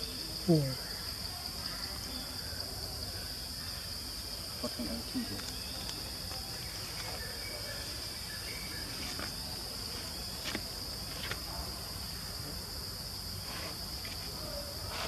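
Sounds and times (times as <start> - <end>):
high-pitched insect chorus: 0.0 - 15.0.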